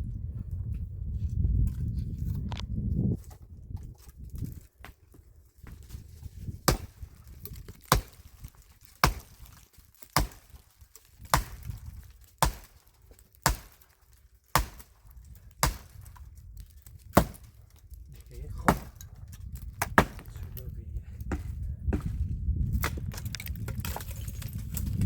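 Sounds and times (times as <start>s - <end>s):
wood being chopped: 5.6s - 17.8s, 18.6s - 20.5s, 21.2s - 24.6s.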